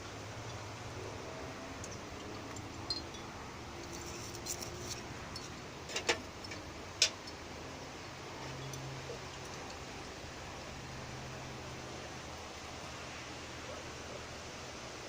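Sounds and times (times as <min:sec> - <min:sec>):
seashell wind chime clinking: 0:01.8 - 0:05.6.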